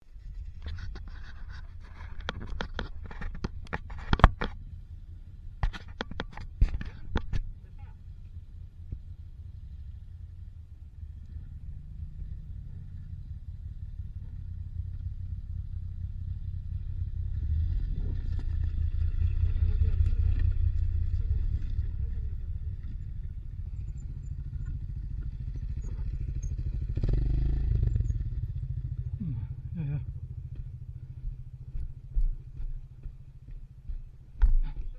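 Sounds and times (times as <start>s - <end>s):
motorcycle rumble: 0.0s - 34.9s
knocks and clicks on stony track: 0.5s - 4.6s, 5.6s - 7.6s, 30.0s - 34.9s.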